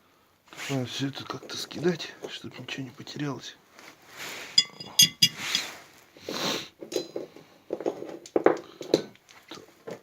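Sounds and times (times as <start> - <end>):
loose metal parts clinking: 4.6 - 5.7.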